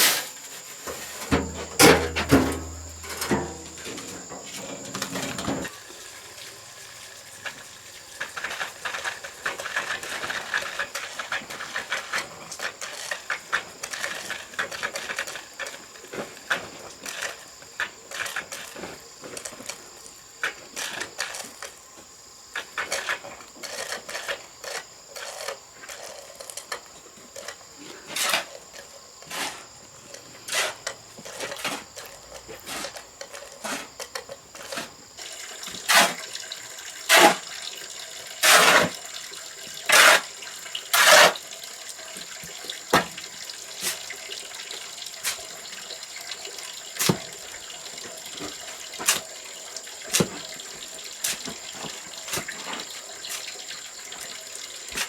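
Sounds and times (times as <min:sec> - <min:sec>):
clinks and scrapes of hard objects: 0:00.0 - 0:05.7, 0:22.6 - 0:36.4, 0:38.4 - 0:39.0, 0:39.8 - 0:41.4.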